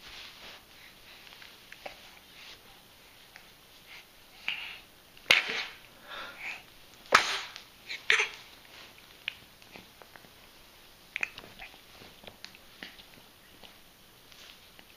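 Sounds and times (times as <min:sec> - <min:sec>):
person sneezing: 0:05.3 - 0:06.4, 0:07.1 - 0:08.4.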